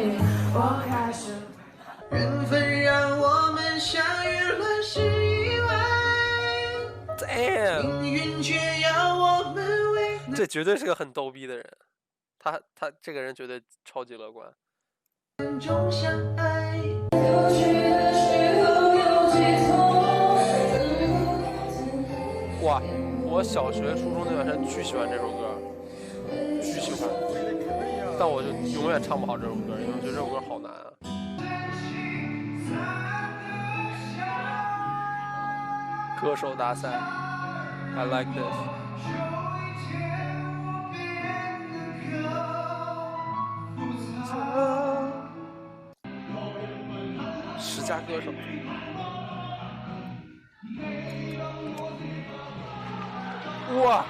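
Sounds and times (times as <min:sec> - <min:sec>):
person singing pop song: 0:00.0 - 0:10.4, 0:15.4 - 0:45.5, 0:46.1 - 0:54.0
musical accompaniment: 0:15.4 - 0:54.0.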